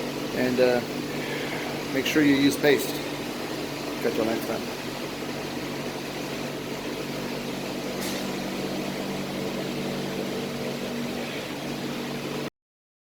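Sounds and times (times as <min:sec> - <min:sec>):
cooling fans whirring: 0:00.0 - 0:12.5
steady electrical hum: 0:00.0 - 0:12.5.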